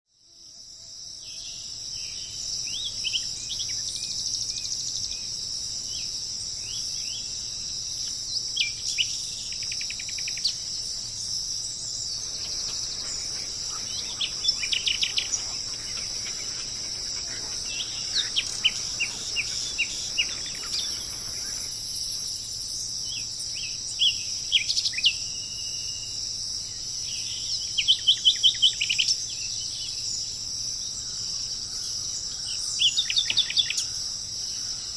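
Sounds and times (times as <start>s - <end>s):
high-pitched insect drone: 6.0s - 29.2s
birds chirping: 8.6s - 24.7s.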